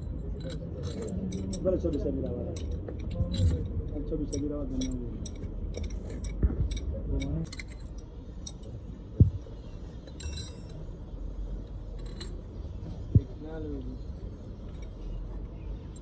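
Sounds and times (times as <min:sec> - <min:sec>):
low workshop hum: 0:00.0 - 0:16.0
metal tools clinking: 0:00.2 - 0:08.8, 0:09.8 - 0:10.9, 0:11.9 - 0:13.2.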